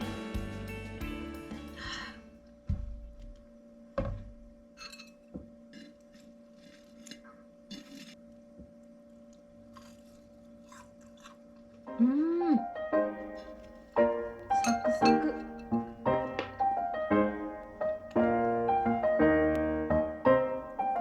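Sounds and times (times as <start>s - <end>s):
background music: 0.0s - 3.0s, 11.9s - 21.0s
crunchy chewing: 5.7s - 8.3s, 9.2s - 11.9s.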